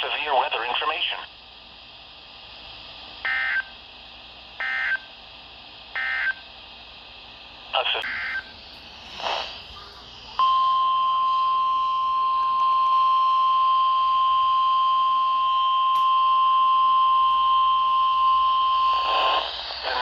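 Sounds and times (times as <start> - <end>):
steady high alarm beep: 3.2 - 3.8, 4.6 - 5.1, 6.0 - 6.4, 8.0 - 8.6, 10.4 - 19.1.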